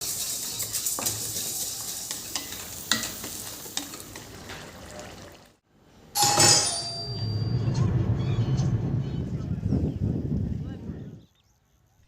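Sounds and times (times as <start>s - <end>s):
spatula scraping and tapping pan: 0.0s - 4.6s
food sizzling in frying pan: 0.0s - 5.3s.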